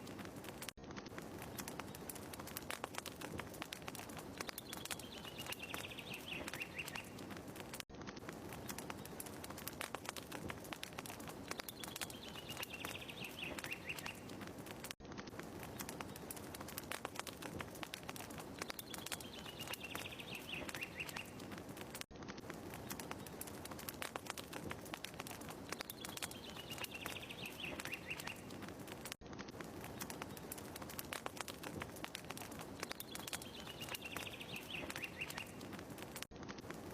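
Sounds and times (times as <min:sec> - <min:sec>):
fireplace crackling: 0:00.0 - 0:36.9
high chirping bird call: 0:04.6 - 0:07.2, 0:33.0 - 0:35.6.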